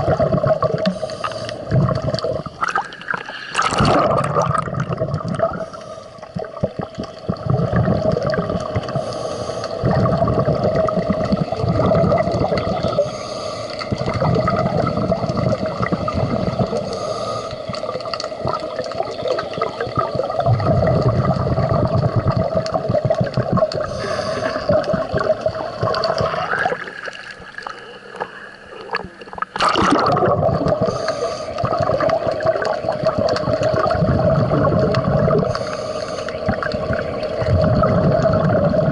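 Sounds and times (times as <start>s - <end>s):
gurgling exhaled bubbles: 0.0s - 13.2s, 13.8s - 38.9s
steady hum: 0.0s - 38.9s
diver breathing through regulator: 0.8s - 1.8s, 5.4s - 6.5s, 8.8s - 10.0s, 12.8s - 14.1s, 16.3s - 18.0s, 23.7s - 25.1s, 30.7s - 31.8s, 35.3s - 37.4s.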